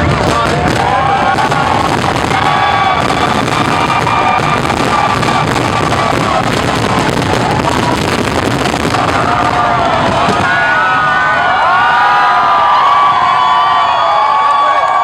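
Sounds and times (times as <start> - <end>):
fireworks crackling: 0.0 - 10.8.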